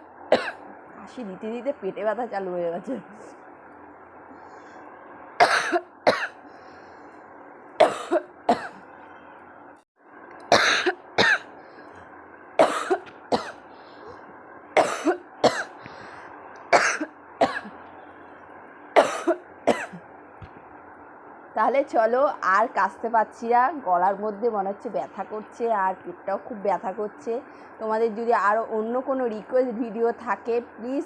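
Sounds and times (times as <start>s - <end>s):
woman coughing: 0.3s - 0.6s, 5.4s - 6.4s, 7.8s - 8.8s, 10.5s - 11.5s, 12.6s - 13.6s, 14.8s - 15.8s, 16.8s - 17.8s, 19.0s - 20.0s.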